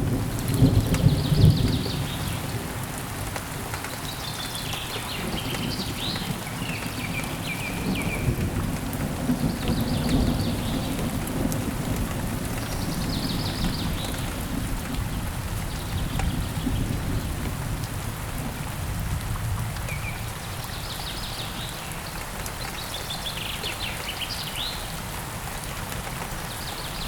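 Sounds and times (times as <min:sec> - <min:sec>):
low rumble of thunder: 0:00.0 - 0:02.7, 0:04.8 - 0:21.7
rain pattering: 0:00.0 - 0:27.0.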